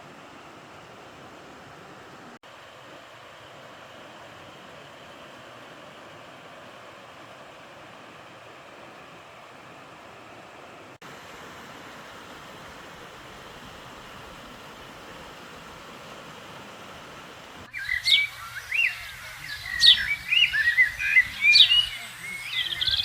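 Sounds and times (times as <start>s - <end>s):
mountain stream rushing: 0.0s - 23.0s
bird chirping: 17.7s - 23.0s.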